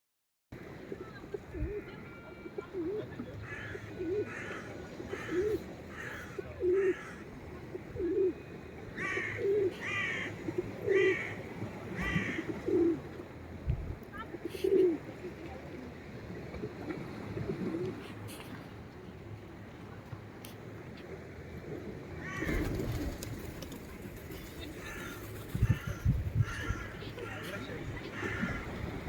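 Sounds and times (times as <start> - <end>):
gull calls: 1.5 - 7.3, 9.0 - 11.4, 12.0 - 13.0, 22.2 - 22.9, 24.4 - 29.0
low cooing bird call: 7.8 - 8.4.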